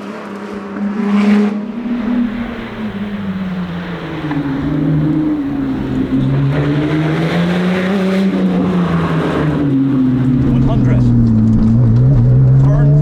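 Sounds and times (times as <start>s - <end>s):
car engine accelerating: 0.0s - 13.0s.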